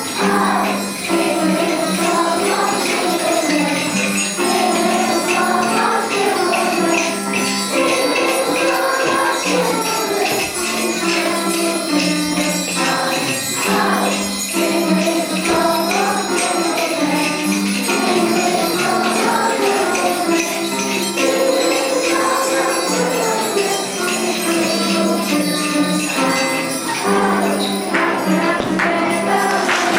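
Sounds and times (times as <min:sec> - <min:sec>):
jingle bells shaken: 0:00.0 - 0:29.9.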